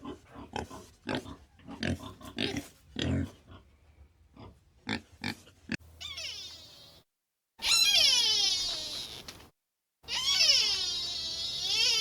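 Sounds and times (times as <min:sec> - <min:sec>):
high wavering animal cries: 0:06.0 - 0:07.0, 0:07.6 - 0:09.4, 0:10.0 - 0:12.0.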